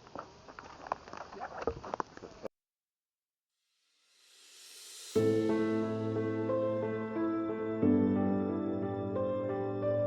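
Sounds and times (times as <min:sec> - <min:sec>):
gentle new-age music: 0:04.8 - 0:10.0.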